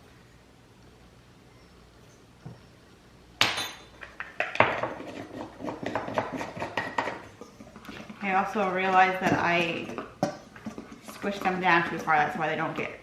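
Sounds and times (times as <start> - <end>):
utensil clinking in a mixing bowl: 3.4 - 13.0.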